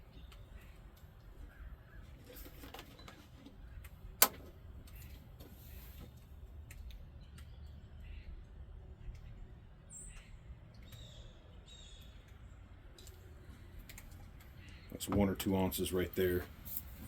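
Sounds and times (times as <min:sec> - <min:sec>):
faint handling noises: 0:00.2 - 0:07.0.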